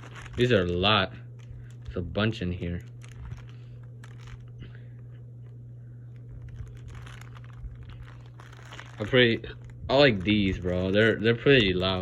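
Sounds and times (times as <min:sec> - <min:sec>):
packaging clicks and rustling: 0:00.0 - 0:02.0, 0:02.6 - 0:12.0
steady low hum: 0:00.0 - 0:12.0.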